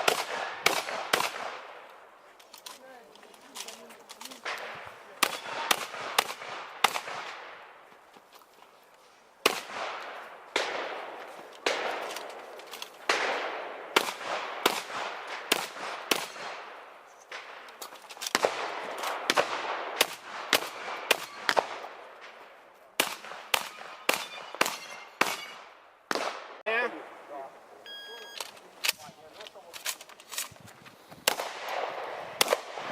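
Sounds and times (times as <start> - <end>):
shotgun shots: 0.0 - 1.9, 4.3 - 7.7, 9.4 - 22.4, 23.0 - 26.6, 31.2 - 32.9.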